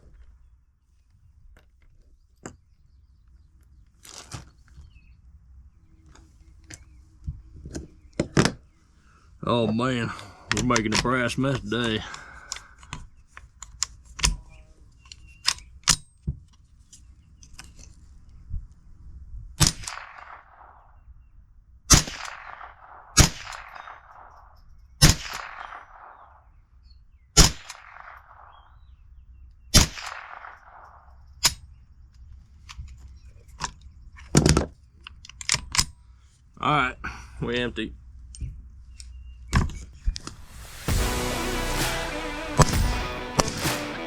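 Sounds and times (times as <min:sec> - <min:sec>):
gunshots: 0:19.6 - 0:21.0, 0:21.9 - 0:26.4, 0:27.4 - 0:28.7, 0:29.8 - 0:31.2, 0:40.2 - 0:44.0.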